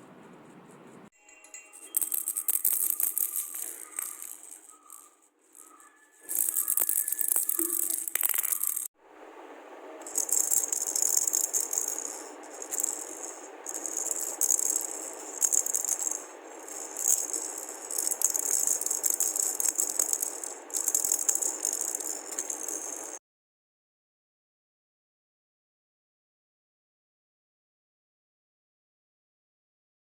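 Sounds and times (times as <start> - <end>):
toy rattle shaken: 1.4 - 8.9, 10.0 - 23.2.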